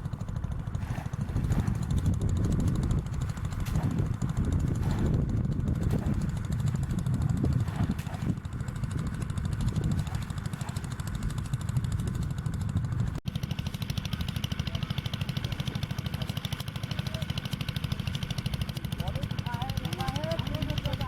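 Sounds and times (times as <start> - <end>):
small engine running: 0.0 - 21.0.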